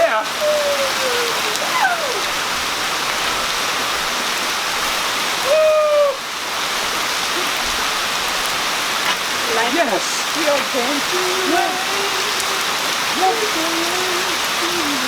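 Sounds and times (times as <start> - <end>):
steady rain hiss: 0.0 - 15.0
person whooping: 0.3 - 2.4, 5.4 - 6.3, 11.1 - 15.0.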